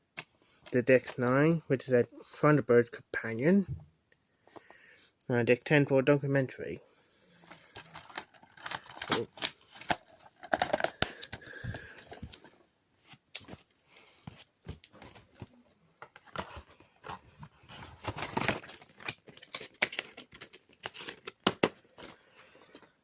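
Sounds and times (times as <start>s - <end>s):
packaging rustling: 7.5s - 12.5s, 13.1s - 22.9s
plastic cases clicking and tapping: 7.8s - 12.5s.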